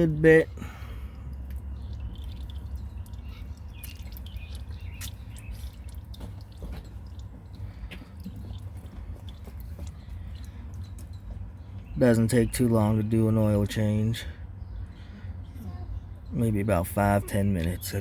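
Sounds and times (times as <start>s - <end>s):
oil dripping into pan: 0.0s - 11.2s
low steady rumble: 0.0s - 18.0s.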